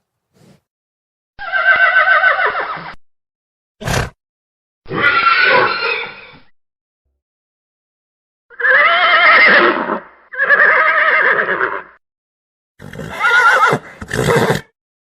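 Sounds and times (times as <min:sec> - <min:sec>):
horse neighing: 0:04.9 - 0:06.4, 0:08.5 - 0:11.9, 0:12.8 - 0:14.7.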